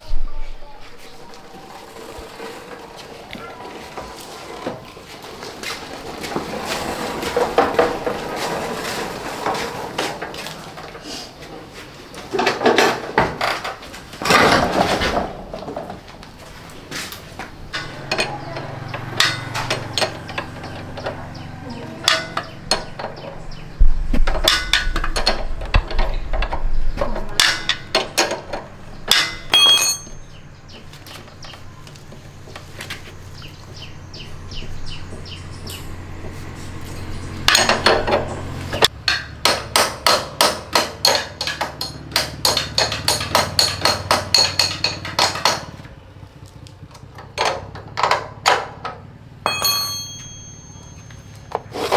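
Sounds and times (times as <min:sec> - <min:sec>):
hammer-like strikes: 0:29.1 - 0:30.3, 0:39.0 - 0:45.6.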